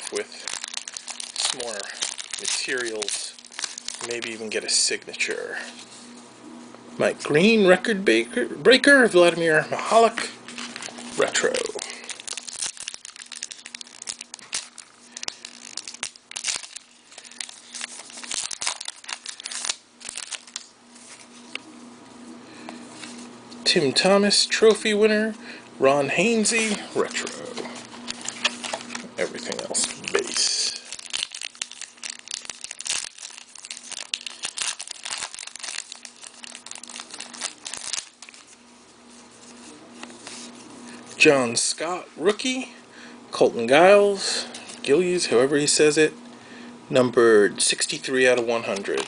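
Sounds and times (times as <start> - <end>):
wrapper tearing and crinkling: 0.0 - 4.6, 10.5 - 21.6, 26.5 - 38.6, 48.7 - 49.0
cards rustling: 0.0 - 6.2, 10.0 - 21.7, 26.2 - 40.7, 48.0 - 49.0.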